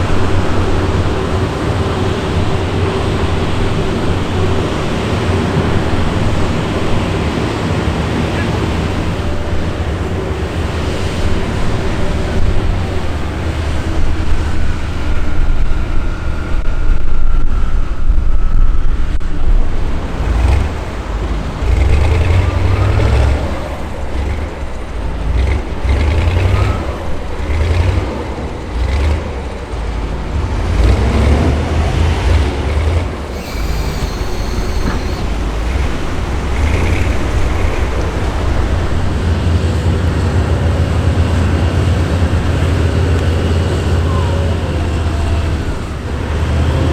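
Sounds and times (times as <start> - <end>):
heavy diesel engines rumbling: 0.0 - 46.9
short high-pitched sounds: 33.3 - 35.7.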